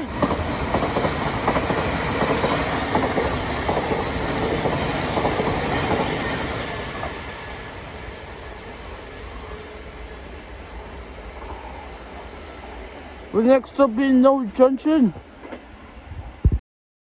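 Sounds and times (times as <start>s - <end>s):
wheels clicking on rail joints: 0.0s - 10.5s
train passing: 0.0s - 16.5s.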